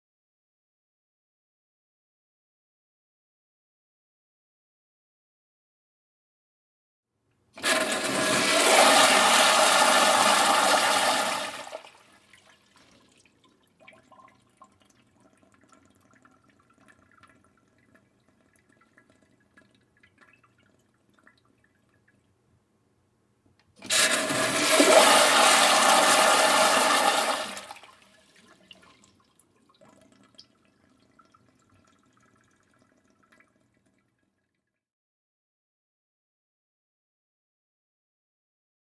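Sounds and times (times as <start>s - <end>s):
toilet flushing: 7.6s - 14.5s, 23.8s - 29.2s
faint water trickling: 11.7s - 22.8s, 27.7s - 34.9s.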